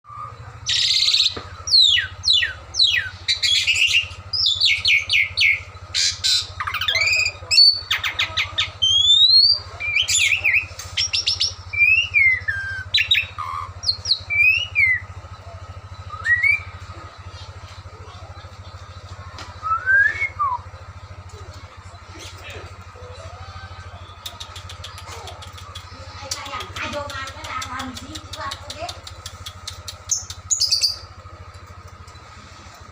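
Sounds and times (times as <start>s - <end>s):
bird whistles and squawks: 0.1s - 15.0s
steady low hum: 0.1s - 32.9s.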